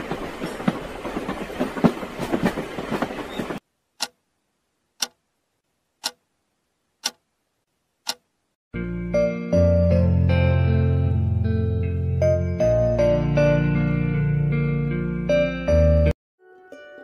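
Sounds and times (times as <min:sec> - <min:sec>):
sharp ticks: 0:04.0 - 0:04.2, 0:05.0 - 0:05.2, 0:06.0 - 0:06.2, 0:07.0 - 0:07.2, 0:08.0 - 0:08.3.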